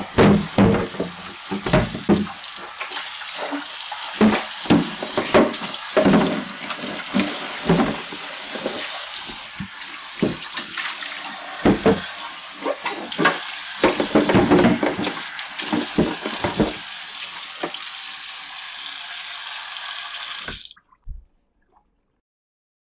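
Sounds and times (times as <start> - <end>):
things clattering in sink: 0.0 - 16.9, 17.6 - 17.8
tap water running into sink: 0.0 - 20.8.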